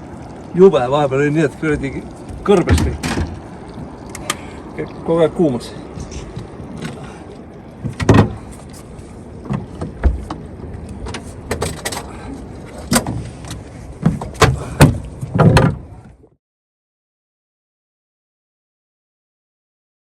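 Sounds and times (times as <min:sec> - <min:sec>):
boat background noise: 0:00.0 - 0:16.4
knocks and thumps on boat: 0:01.5 - 0:04.4, 0:05.9 - 0:16.3.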